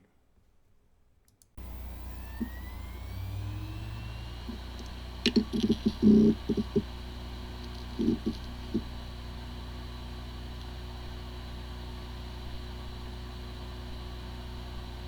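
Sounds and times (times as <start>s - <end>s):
hard drive head clicking: 1.6s - 11.2s
hard drive humming: 1.6s - 15.0s
hard drive spin-up whine: 1.6s - 15.0s.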